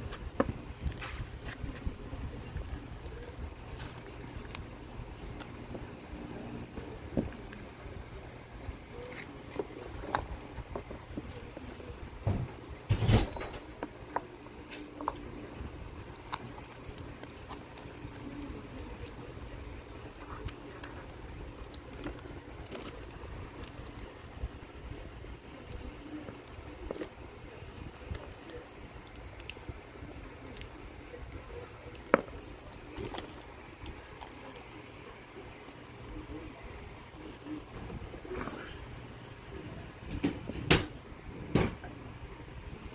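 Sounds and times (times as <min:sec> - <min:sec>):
slime squelch: 0:00.0 - 0:12.9, 0:13.7 - 0:39.8
slime squishing with sticky pops: 0:13.7 - 0:36.2.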